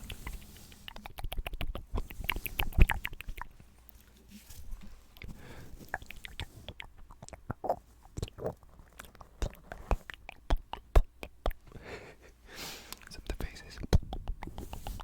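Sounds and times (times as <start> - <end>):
wet mouth clicks and smacks: 0.0 - 4.0, 5.9 - 11.6, 13.8 - 15.0.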